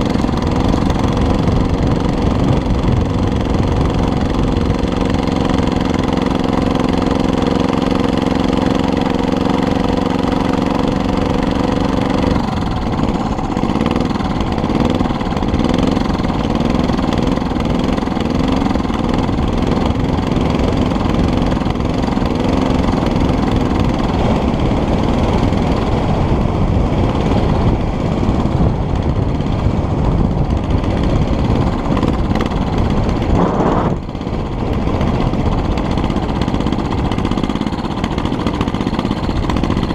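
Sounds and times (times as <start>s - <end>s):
small motorized bicycle engine: 0.0s - 39.9s.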